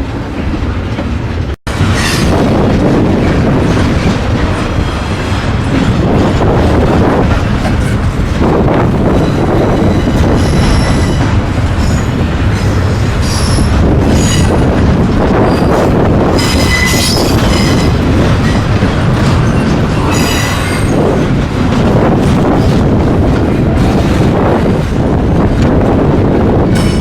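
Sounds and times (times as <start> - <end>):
freight train cars rumbling past: 0.0 - 27.0
train wheels squealing: 9.2 - 14.6, 16.4 - 18.7, 19.4 - 21.0.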